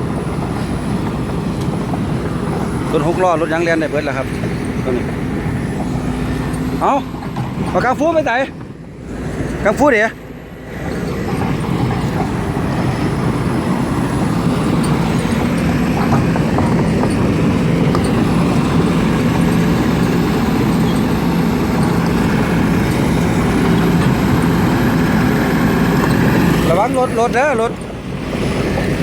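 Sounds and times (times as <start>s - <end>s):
diesel engine running: 0.0s - 29.0s.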